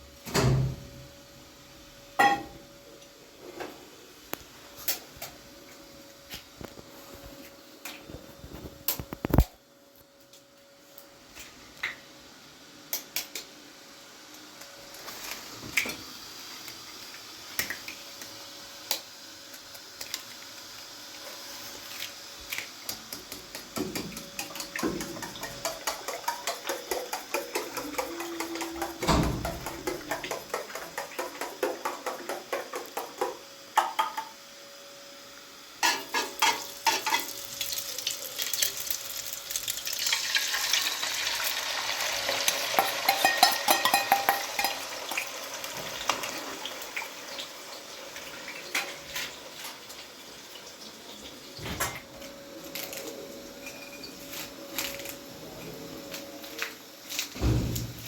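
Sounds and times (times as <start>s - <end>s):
food sizzling: 14.7s - 34.4s, 35.6s - 51.6s.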